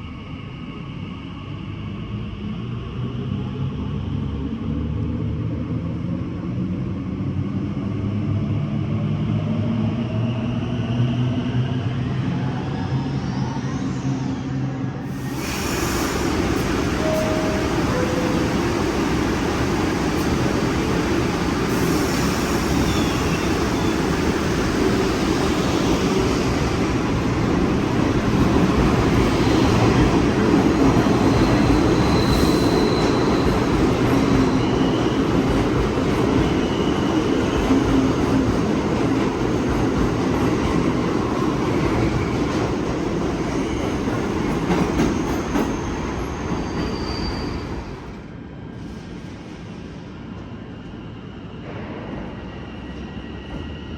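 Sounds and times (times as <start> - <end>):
subway train rumbling: 0.0 - 53.9
high wheel squeals: 19.8 - 24.4, 31.2 - 33.8, 45.1 - 47.9.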